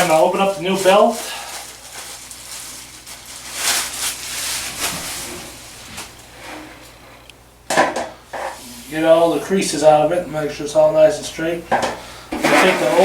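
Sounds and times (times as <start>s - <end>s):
packaging rustling and crinkling: 0.0s - 6.3s.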